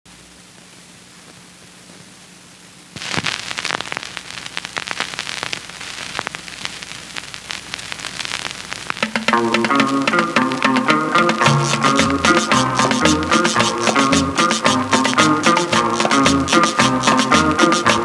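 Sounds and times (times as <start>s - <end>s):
steady hiss: 0.1s - 18.0s
crackle of clicks and pops: 0.5s - 10.7s.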